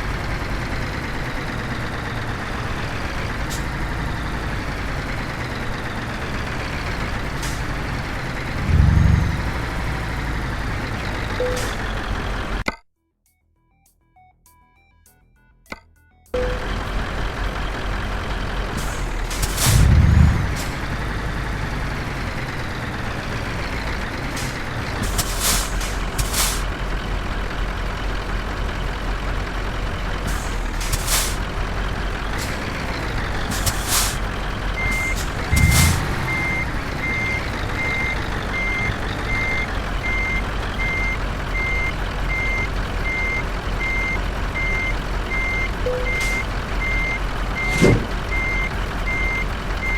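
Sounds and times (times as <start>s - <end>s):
diesel truck engine running: 0.0s - 12.6s, 16.4s - 49.9s
loud engine bursts: 0.0s - 12.6s, 16.4s - 49.9s
reversing beeper: 11.2s - 12.0s, 16.4s - 16.8s, 34.7s - 49.9s.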